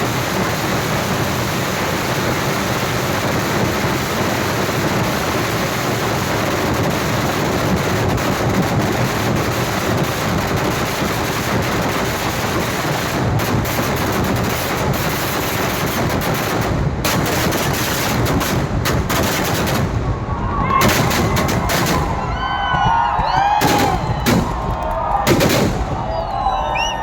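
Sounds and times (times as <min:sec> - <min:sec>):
fireworks explosions: 0:00.0 - 0:27.0
firework whistles: 0:19.2 - 0:27.0.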